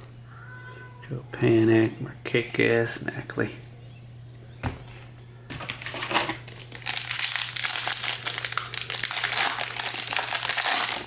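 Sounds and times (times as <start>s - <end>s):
foil wrapper crinkling: 5.5s - 11.0s.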